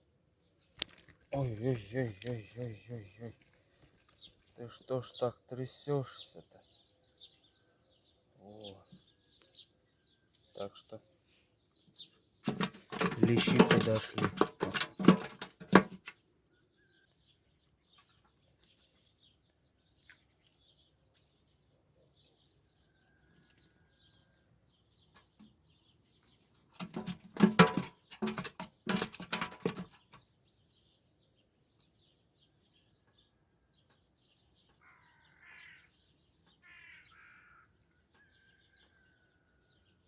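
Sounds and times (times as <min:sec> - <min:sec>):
small birds chirping: 0:00.0 - 0:14.2, 0:16.1 - 0:28.2, 0:29.4 - 0:40.0
crow cawing: 0:34.8 - 0:36.0, 0:36.6 - 0:37.8.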